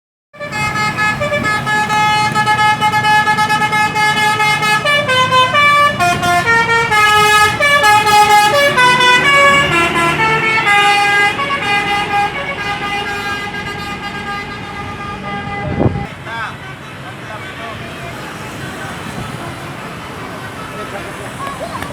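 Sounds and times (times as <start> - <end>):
bus musical horn playing a tune: 0.4 - 16.2
bus engine rumble: 0.4 - 21.9.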